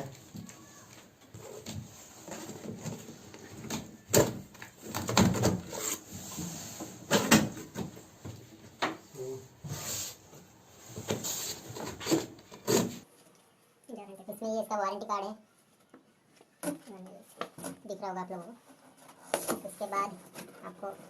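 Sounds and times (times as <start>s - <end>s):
cardboard rubbing and rustling: 9.6s - 13.1s.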